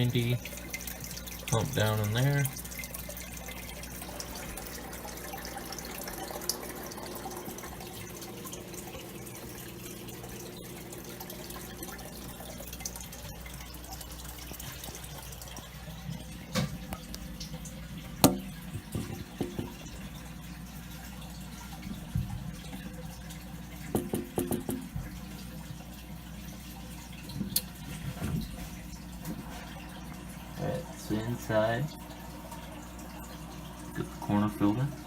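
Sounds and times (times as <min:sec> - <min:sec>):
low steady hum: 0:00.0 - 0:35.0
water trickling and splashing: 0:00.0 - 0:35.0
sharp knocks: 0:23.9 - 0:25.0.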